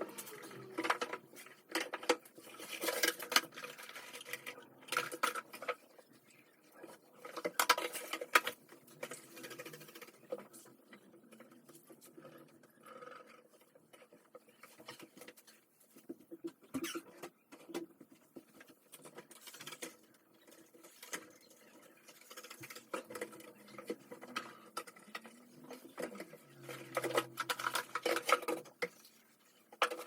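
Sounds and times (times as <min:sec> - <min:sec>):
objects handled by hand: 0:00.0 - 0:30.0
rustling and scraping: 0:00.0 - 0:30.0.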